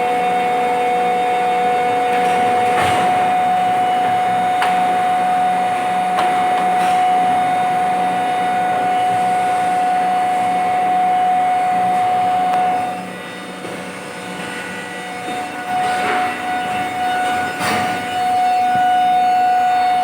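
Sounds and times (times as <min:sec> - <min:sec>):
injection moulding machine running: 0:00.0 - 0:20.0.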